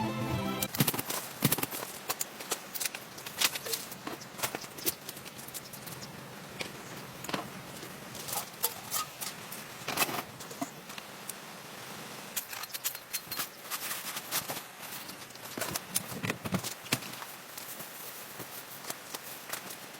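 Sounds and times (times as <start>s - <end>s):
rain hiss: 0.0s - 13.0s.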